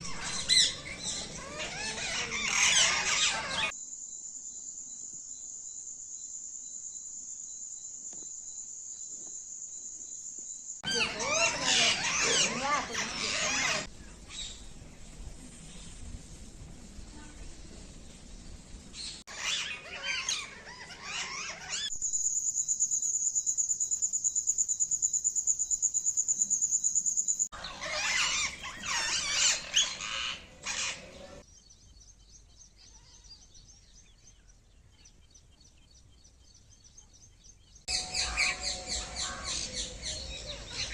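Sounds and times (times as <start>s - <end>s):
bird chirping: 19.0s - 40.9s
high-pitched pulsing bird trill: 37.9s - 40.9s.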